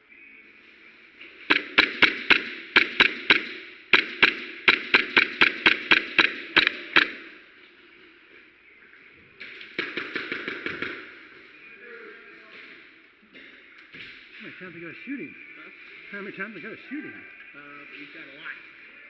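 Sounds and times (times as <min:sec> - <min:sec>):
airsoft gun shots: 0:01.5 - 0:07.4, 0:09.7 - 0:11.2.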